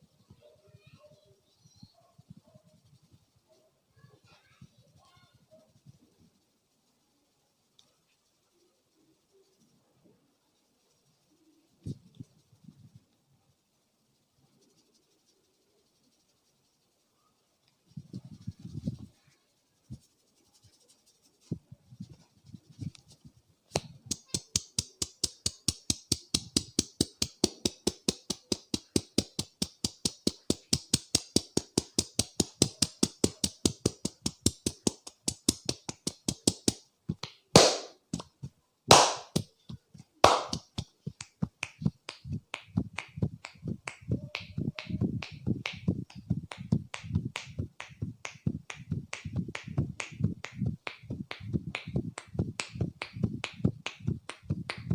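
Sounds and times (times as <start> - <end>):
dull pats: 19.8 - 54.9
hands striking head: 23.7 - 54.9
loud sharp cracks: 37.6 - 38.0, 38.9 - 39.5, 40.2 - 40.7.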